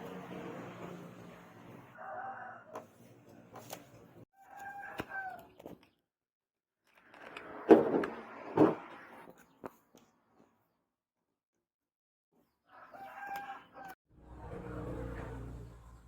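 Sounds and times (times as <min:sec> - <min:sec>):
rooster crowing: 0:02.0 - 0:02.8, 0:04.4 - 0:05.4, 0:12.7 - 0:14.0.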